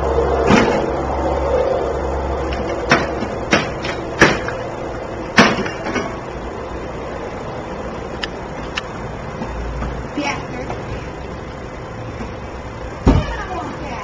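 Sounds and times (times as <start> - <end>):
low hum: 0.0 - 13.6
knocks and bangs on lawn mower: 2.6 - 4.6, 5.3 - 6.2.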